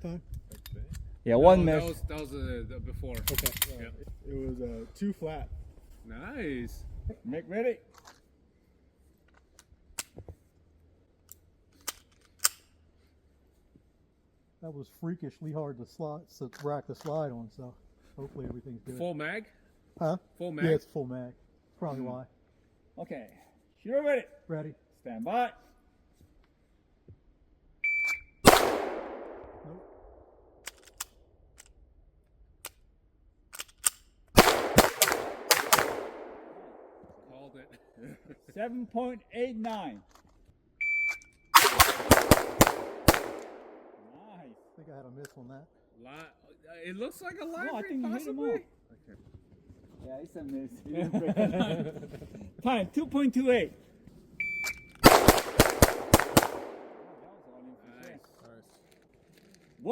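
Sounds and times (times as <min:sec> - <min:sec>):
pistol metallic clicks and clacks: 0:03.2 - 0:03.8, 0:11.2 - 0:12.8, 0:30.6 - 0:31.8, 0:33.5 - 0:36.4, 0:41.1 - 0:43.8, 0:54.7 - 0:57.0
pistol shots echoing: 0:28.4 - 0:29.9, 0:34.4 - 0:37.2, 0:41.6 - 0:44.0, 0:55.0 - 0:57.4.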